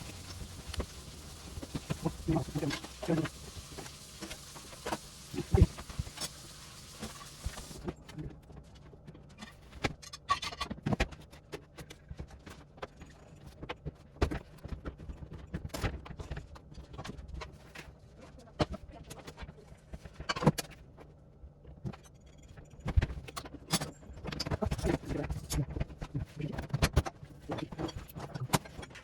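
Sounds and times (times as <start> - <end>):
faint hiss: 0.0 - 7.8.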